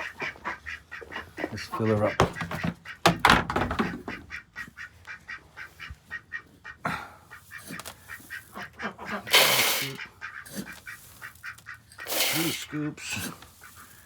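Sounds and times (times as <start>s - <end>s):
ducks quacking: 0.0s - 14.0s
dry feed poured into feeder: 9.3s - 10.0s, 12.1s - 12.6s.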